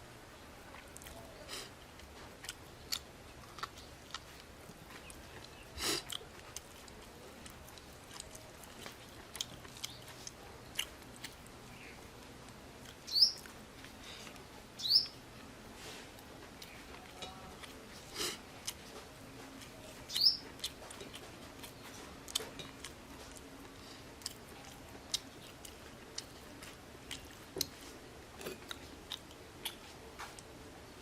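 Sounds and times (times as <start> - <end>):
person chewing food: 0.6 - 31.0
bird chirps: 13.1 - 13.4, 14.8 - 15.2, 20.1 - 20.4.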